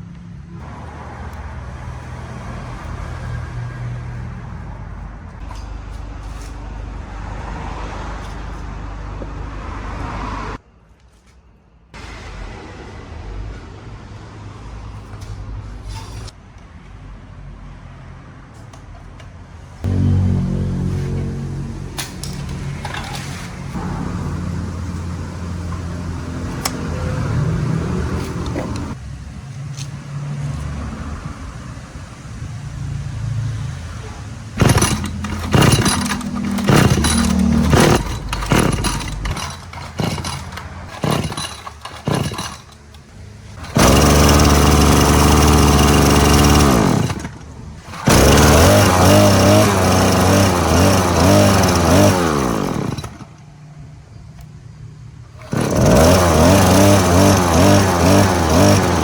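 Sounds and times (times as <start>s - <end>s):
small petrol engine running: 19.8s - 29.0s, 34.0s - 53.4s, 55.3s - 59.0s.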